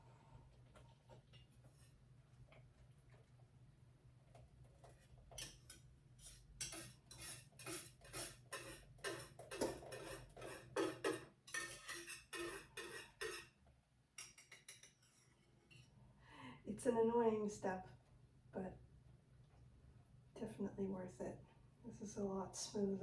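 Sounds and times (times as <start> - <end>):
utensil scraping against a sieve: 5.3 - 13.5.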